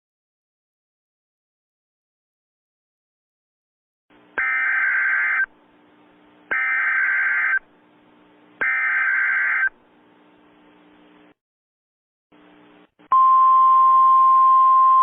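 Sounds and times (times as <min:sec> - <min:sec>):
faint steady hum: 0:04.1 - 0:11.4, 0:12.4 - 0:15.0
buzzing digital data tones: 0:04.4 - 0:05.5, 0:06.6 - 0:07.6, 0:08.6 - 0:09.7.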